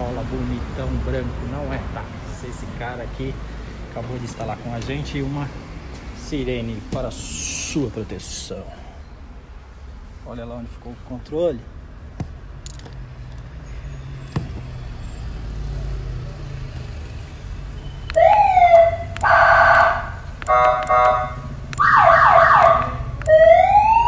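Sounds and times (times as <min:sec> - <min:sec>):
electronic siren: 0:18.1 - 0:24.0.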